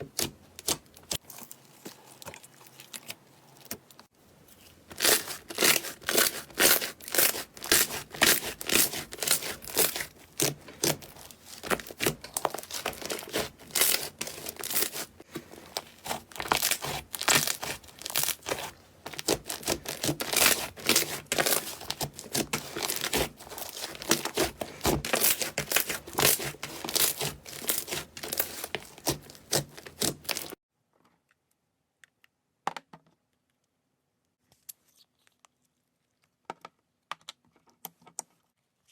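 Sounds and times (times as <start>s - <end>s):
slime squeezed crackling and popping: 5.0s - 15.0s, 15.8s - 30.6s.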